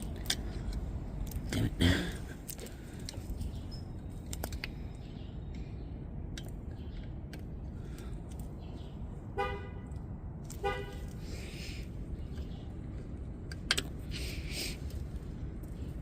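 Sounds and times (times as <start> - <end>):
car horn toots: 9.3 - 11.1.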